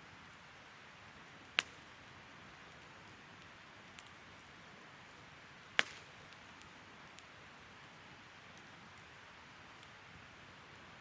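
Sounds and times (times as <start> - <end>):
campfire crackling: 0.0 - 11.0
sharp pops from fire: 1.4 - 2.1, 2.7 - 4.2, 5.0 - 7.3.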